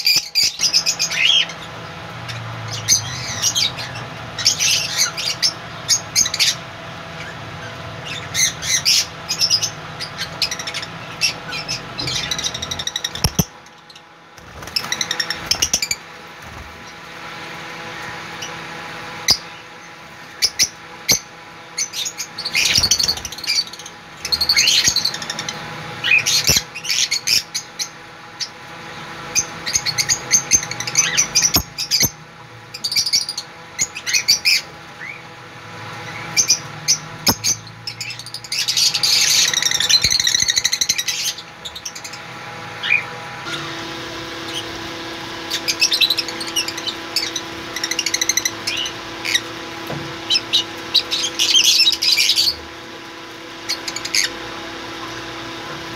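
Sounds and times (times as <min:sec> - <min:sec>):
lovebirds chirping: 0:00.0 - 0:16.1.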